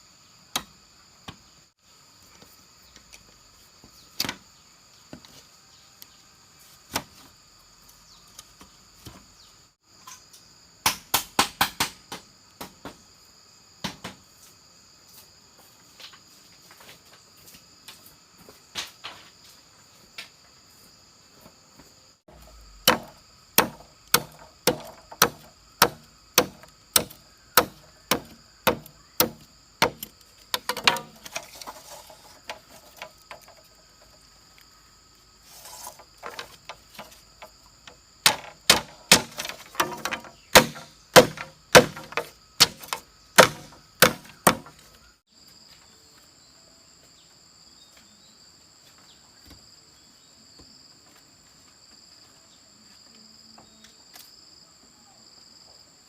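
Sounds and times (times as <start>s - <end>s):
insects buzzing: 0.0s - 56.0s
hand tool chopping wood: 22.3s - 33.7s, 35.5s - 44.9s.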